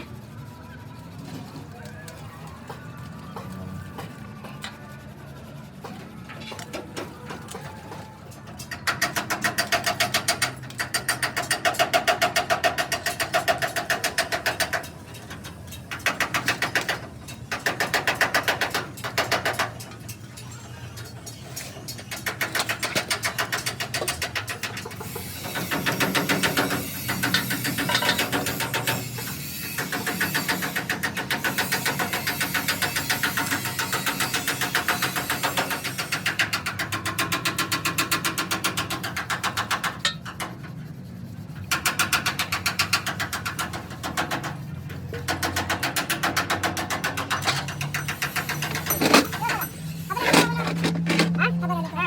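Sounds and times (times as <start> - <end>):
power tool rattling: 46.1 - 51.8.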